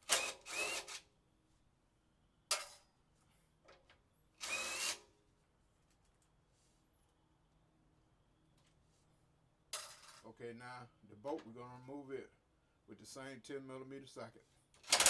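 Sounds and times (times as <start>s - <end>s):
power drill bursts: 0.0s - 1.0s, 4.4s - 5.0s.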